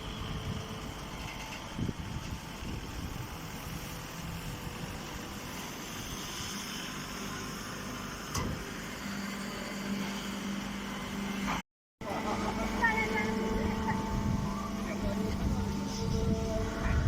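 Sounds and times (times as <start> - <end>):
baling press machine hum: 0.0 - 17.0
low hum tone: 12.0 - 17.0.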